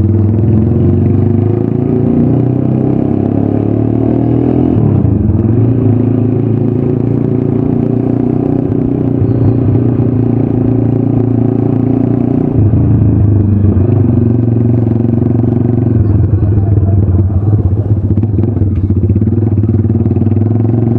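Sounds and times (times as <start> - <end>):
motorcycle engine running: 0.0 - 20.9.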